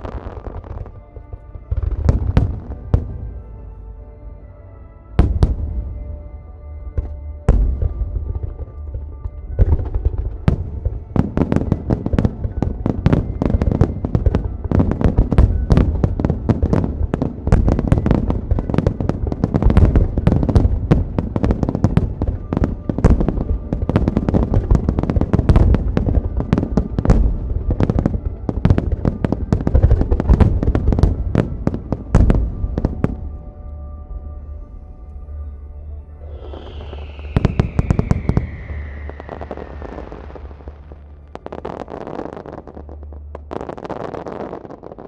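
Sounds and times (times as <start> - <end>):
fireworks exploding: 0.0 - 3.5, 6.9 - 33.7, 36.2 - 45.0
faint music: 0.0 - 45.0.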